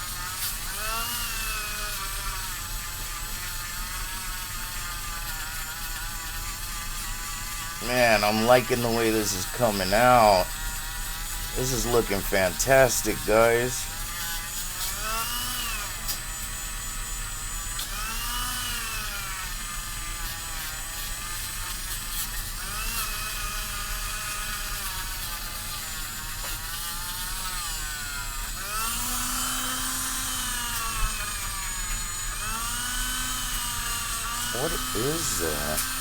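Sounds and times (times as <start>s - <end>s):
rotary tool buffing metal: 20.1s - 36.0s.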